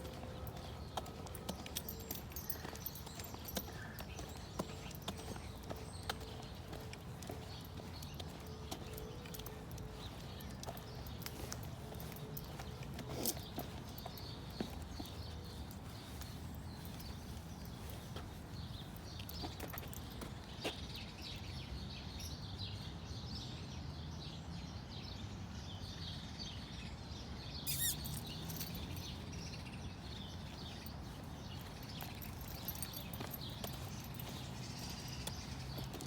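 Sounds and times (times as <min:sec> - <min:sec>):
hooves clip-clopping: 0:00.0 - 0:20.7, 0:30.5 - 0:36.0.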